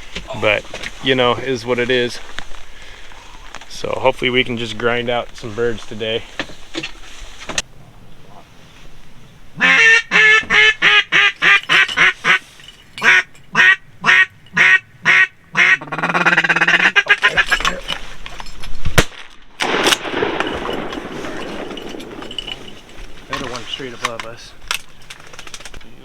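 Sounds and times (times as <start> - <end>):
duck call quacking: 9.6 - 12.4, 13.0 - 17.6.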